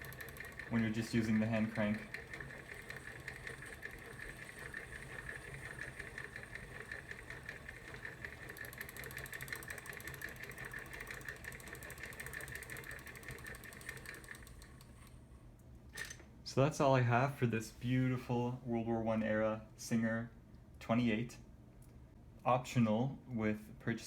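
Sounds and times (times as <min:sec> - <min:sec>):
sewing machine bobbin winder whirring: 0:00.0 - 0:15.2.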